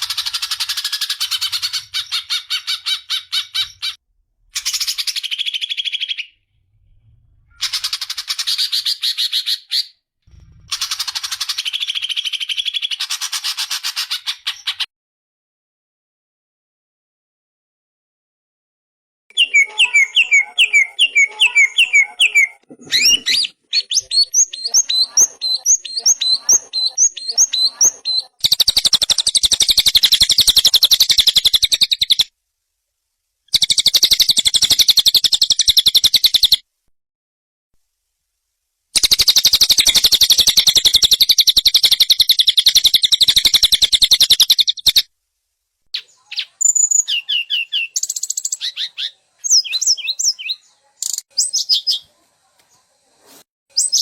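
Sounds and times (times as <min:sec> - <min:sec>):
songbird chirps and trills: 0:00.0 - 0:04.0, 0:04.6 - 0:06.6, 0:19.3 - 0:32.3, 0:33.5 - 0:36.6, 0:39.0 - 0:45.1, 0:46.0 - 0:53.0, 0:53.7 - 0:54.0.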